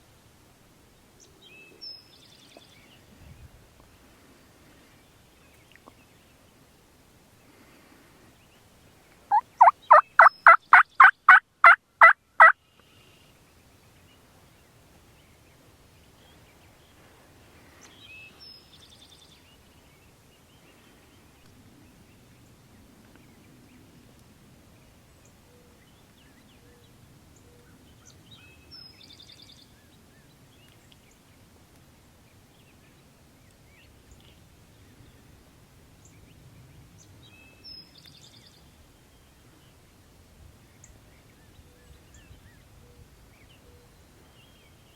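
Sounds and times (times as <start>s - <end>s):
faint woodland background: 0.0s - 44.9s
turkey yelps: 9.3s - 12.5s.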